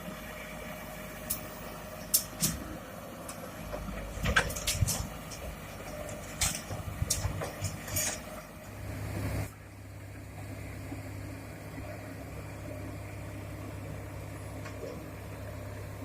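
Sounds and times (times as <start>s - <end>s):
heavy diesel machinery: 0.0s - 16.0s
low engine idle: 0.0s - 16.0s
metal clanks and knocks: 3.7s - 8.4s.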